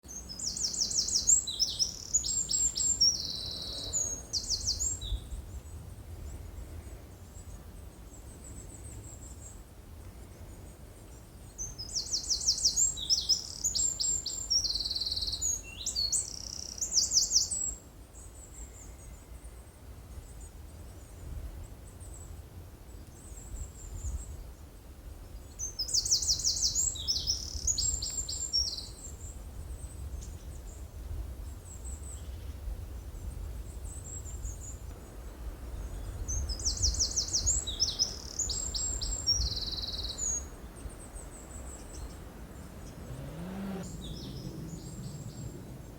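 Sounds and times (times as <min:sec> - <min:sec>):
songbird trilling: 0:36.3 - 0:45.9
low rumble: 0:41.4 - 0:45.9.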